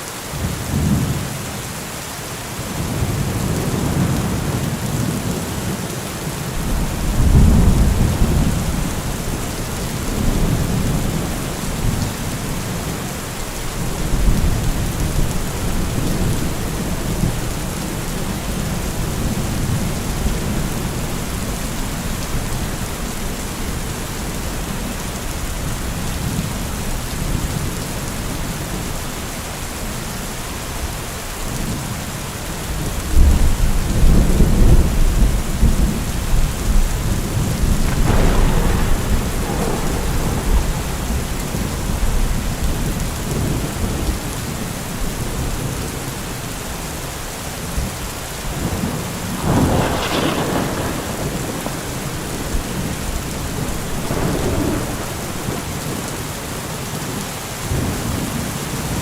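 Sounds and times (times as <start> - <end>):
heavy rain falling: 0.0 - 59.0
low rumbling: 37.3 - 43.5.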